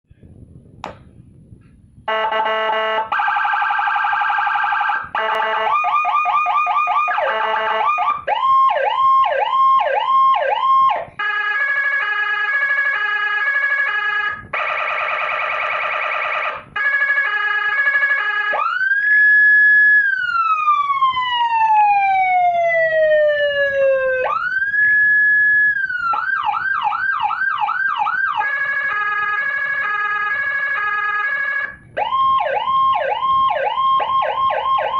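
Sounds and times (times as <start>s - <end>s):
electronic siren cycling tones: 2.0s - 34.9s.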